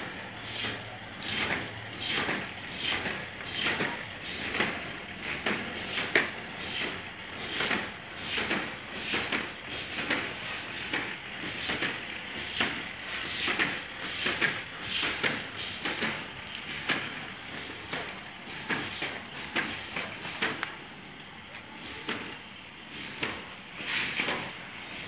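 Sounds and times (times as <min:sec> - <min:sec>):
machine working pvc pipe: 0:00.0 - 0:25.0.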